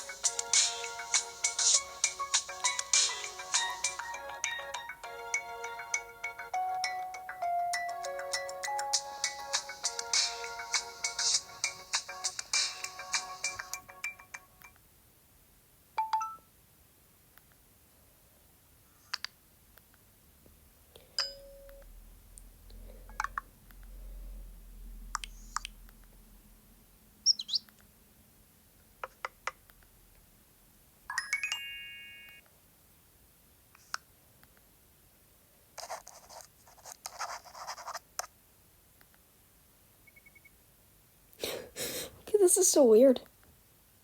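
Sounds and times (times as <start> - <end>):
phone chime: 16.0 - 16.5, 21.2 - 21.8.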